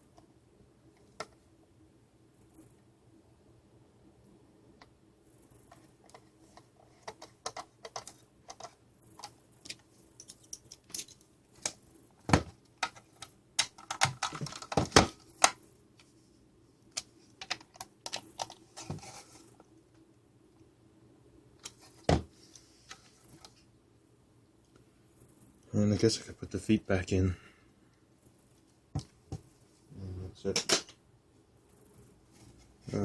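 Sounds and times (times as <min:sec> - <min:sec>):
plastic parts clicking and tapping: 0:05.6 - 0:16.1, 0:16.9 - 0:19.2.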